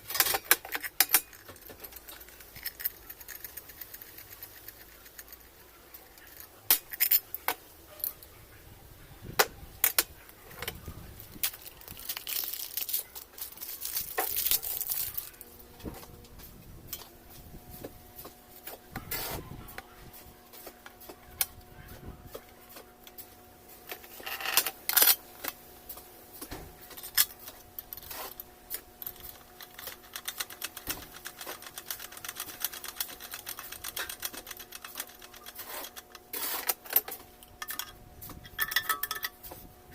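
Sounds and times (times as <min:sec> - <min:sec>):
small metal parts clinking: 0:00.0 - 0:08.2, 0:09.8 - 0:15.5, 0:23.8 - 0:25.6, 0:26.9 - 0:39.4
faint steady hum: 0:00.0 - 0:39.9.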